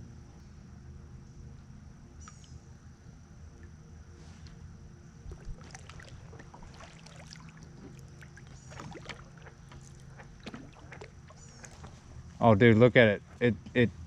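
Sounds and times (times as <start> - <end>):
faint paddle dips: 3.6 - 12.4
water dripping: 5.3 - 12.3
small water splashes: 5.3 - 12.4.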